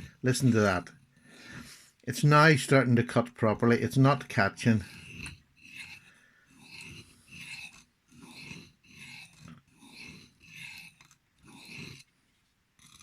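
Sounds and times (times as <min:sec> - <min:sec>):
knife rasping on sharpening stone: 0:04.6 - 0:12.1, 0:12.8 - 0:13.0.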